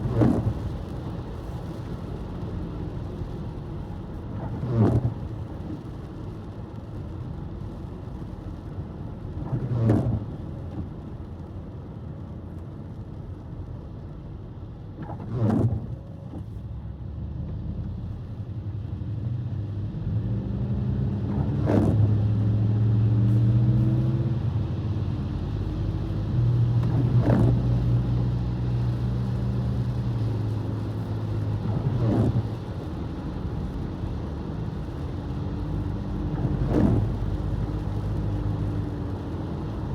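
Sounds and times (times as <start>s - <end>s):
car road and engine noise: 0.0s - 39.9s
windshield wipers swishing: 15.0s - 16.6s, 21.3s - 22.1s, 25.6s - 39.8s.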